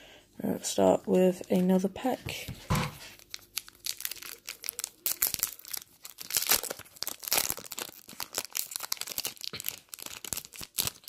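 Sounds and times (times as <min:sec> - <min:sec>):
wrapper crinkling: 0:03.0 - 0:11.0
paper pack tearing: 0:03.1 - 0:11.0.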